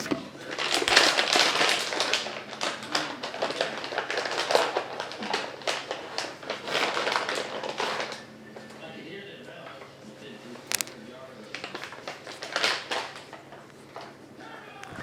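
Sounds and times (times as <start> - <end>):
small objects tapping and rustling: 10.7 - 11.0.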